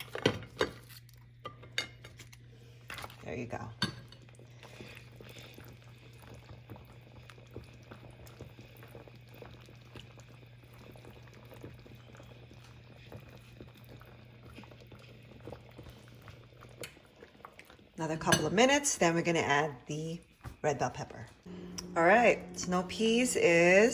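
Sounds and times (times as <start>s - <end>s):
curry bubbling in a pan: 4.2s - 19.6s
steady low hum: 21.0s - 23.9s.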